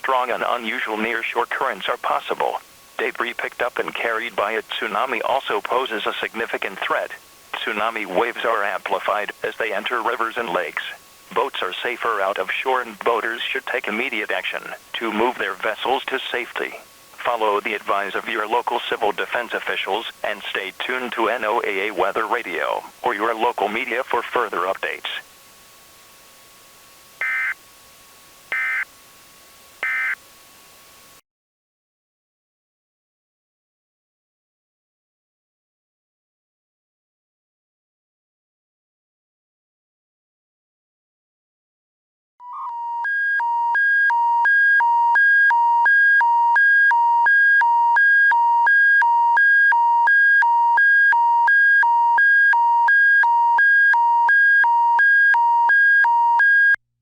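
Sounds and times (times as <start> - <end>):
faint steady hum: 0.0 - 31.2
alternating two-tone alert signal: 27.2 - 27.6, 28.5 - 28.9, 29.8 - 30.2.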